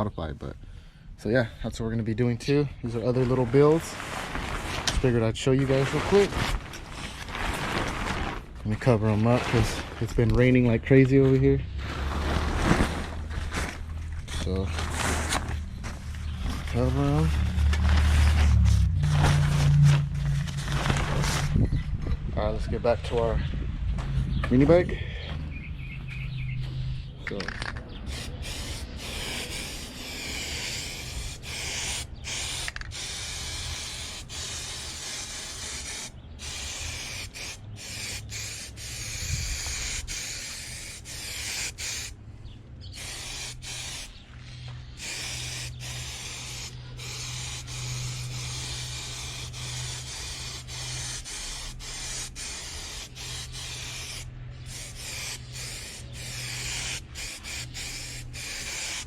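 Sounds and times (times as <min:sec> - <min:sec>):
spray paint can hissing: 0:28.1 - 0:42.2, 0:42.9 - 0:59.0.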